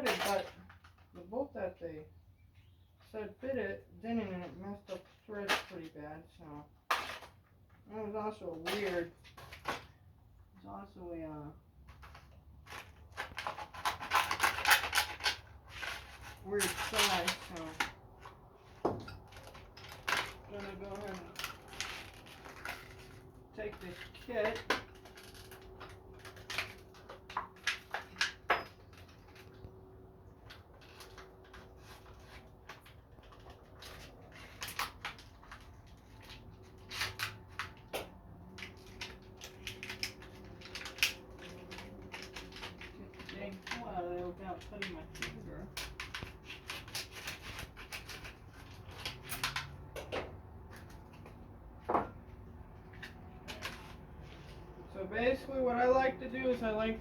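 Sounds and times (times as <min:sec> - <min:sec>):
clicks and knocks of handling: 0:11.8 - 0:54.8.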